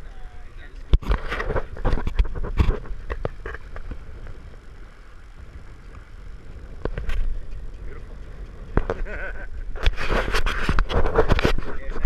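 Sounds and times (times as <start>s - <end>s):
boat engine rumble: 0.0s - 12.0s.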